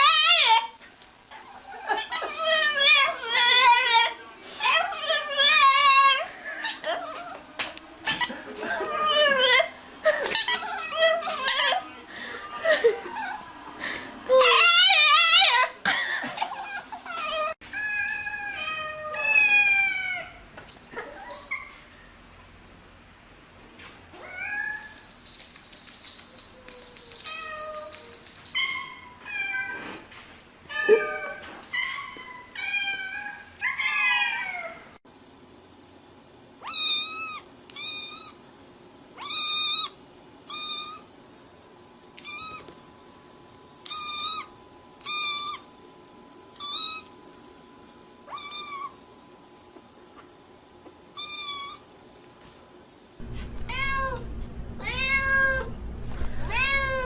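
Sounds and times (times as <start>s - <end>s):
cats meowing: 17.2s - 20.4s, 56.5s - 57.0s.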